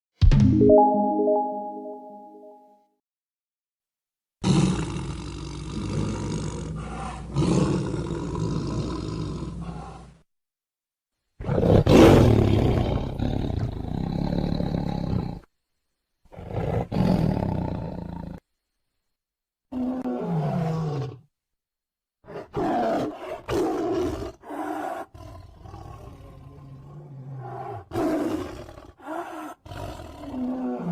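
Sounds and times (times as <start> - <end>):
tiger roaring: 4.4 - 10.1, 22.3 - 30.9.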